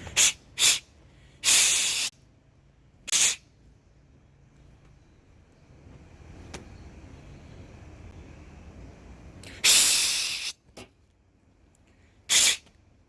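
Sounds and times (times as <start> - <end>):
loud spray-like hiss: 1.4 - 2.1, 3.1 - 3.4, 9.6 - 10.6, 12.3 - 12.6.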